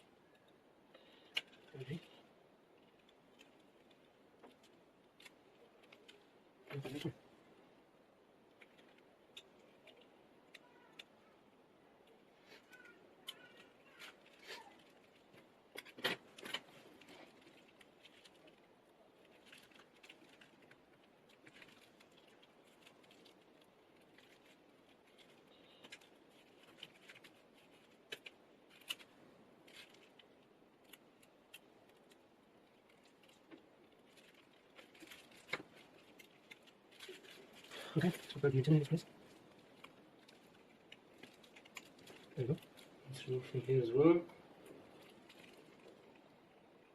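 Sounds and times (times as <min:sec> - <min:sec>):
small parts and tools clicking: 0:08.5 - 0:11.4, 0:12.0 - 0:43.0.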